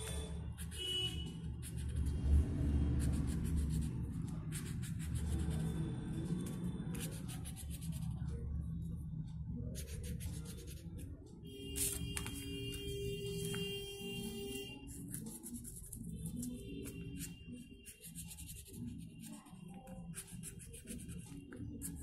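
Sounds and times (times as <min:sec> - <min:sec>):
colouring tool scribbling on paper: 0:14.8 - 0:22.0.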